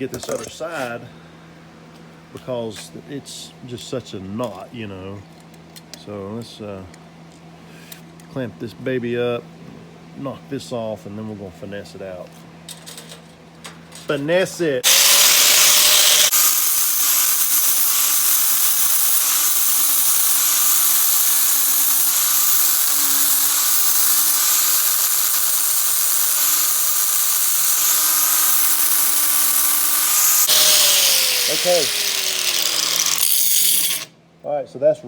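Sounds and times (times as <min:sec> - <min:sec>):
power grinder grinding steel: 0:14.8 - 0:34.1.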